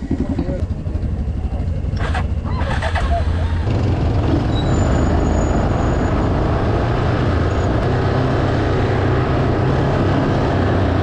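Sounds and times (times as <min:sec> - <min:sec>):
ride noise: 0:00.0 - 0:08.2
atv engine running: 0:00.0 - 0:11.0.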